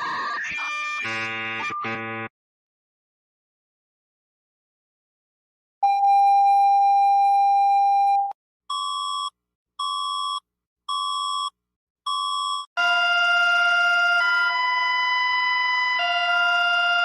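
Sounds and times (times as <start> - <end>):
steady buzzy tone: 1.0 - 2.3.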